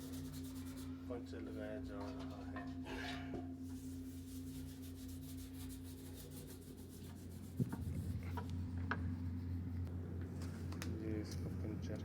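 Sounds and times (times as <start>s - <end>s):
steady low hum: 3.5s - 12.0s.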